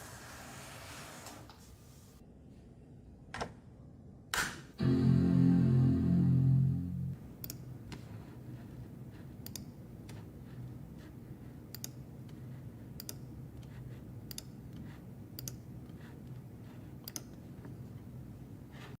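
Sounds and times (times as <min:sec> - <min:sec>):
background music: 0:04.8 - 0:07.2
low steady hum: 0:04.8 - 0:18.9.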